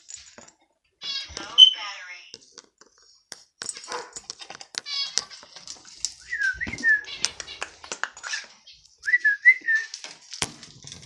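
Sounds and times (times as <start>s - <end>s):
pet bird whistling gliding notes: 6.2s - 7.5s, 9.0s - 9.9s.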